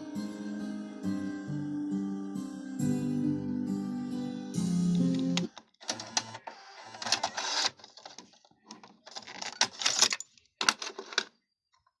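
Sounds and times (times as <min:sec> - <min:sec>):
cassette mechanism clicks: 0:05.4 - 0:08.2.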